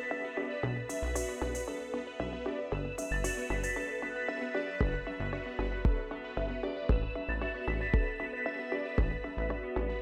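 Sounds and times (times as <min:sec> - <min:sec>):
steady low beat: 0:00.9 - 0:04.0, 0:04.8 - 0:08.2, 0:09.0 - 0:10.0.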